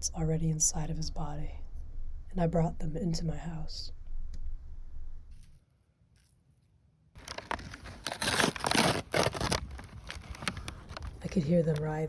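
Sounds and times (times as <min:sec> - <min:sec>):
bag crinkling and rustling: 0:07.2 - 0:11.9.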